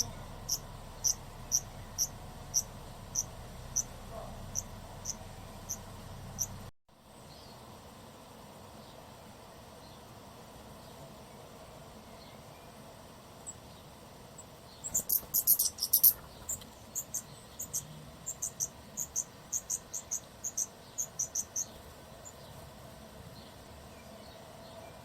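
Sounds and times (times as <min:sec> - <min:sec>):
nestlings begging cheeps: 0:00.0 - 0:06.7, 0:14.8 - 0:22.4.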